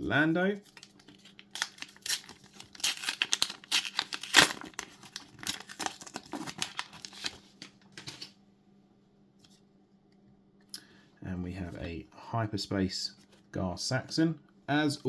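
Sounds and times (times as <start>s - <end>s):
foil wrapper tearing and crinkling: 0.7s - 7.6s.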